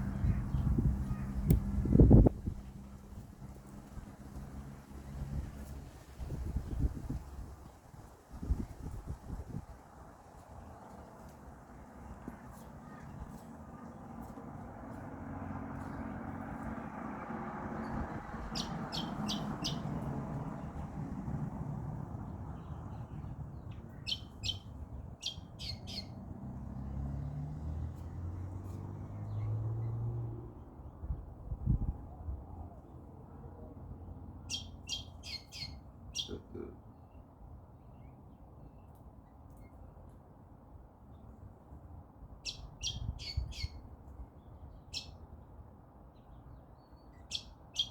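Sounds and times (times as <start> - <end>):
lorikeet high-pitched calls: 18.5 - 19.8, 24.1 - 26.2, 34.5 - 36.3, 42.4 - 43.8, 47.3 - 47.9.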